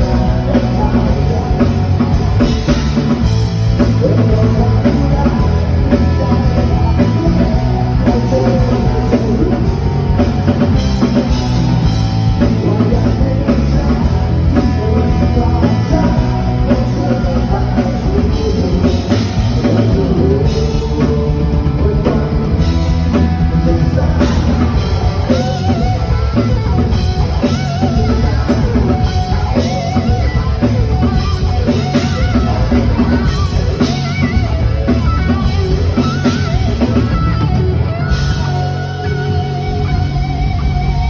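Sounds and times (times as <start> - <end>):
rock band playing live: 0.0 - 41.0.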